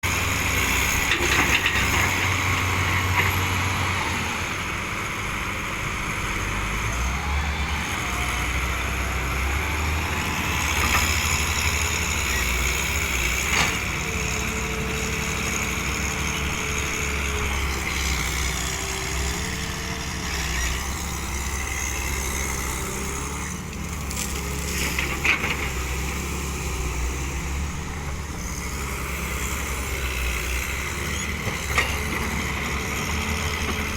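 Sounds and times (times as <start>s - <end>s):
construction machinery diesel hum: 0.0s - 33.9s.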